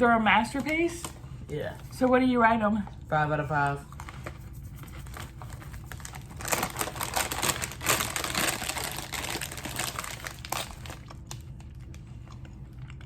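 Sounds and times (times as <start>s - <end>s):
plastic snack bag crinkling: 5.0s - 12.1s.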